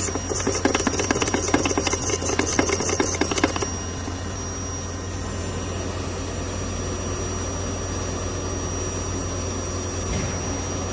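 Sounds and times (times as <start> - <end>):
sharpening machine humming: 0.0 - 5.3.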